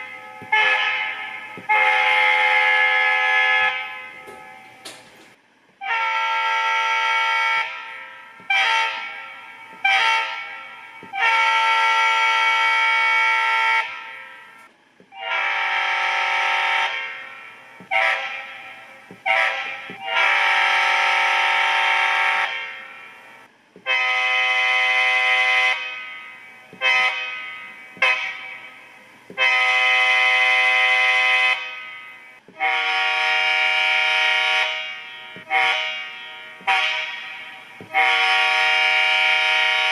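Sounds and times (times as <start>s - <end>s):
locomotive air horn blasts: 0.0s - 4.8s, 5.8s - 39.9s.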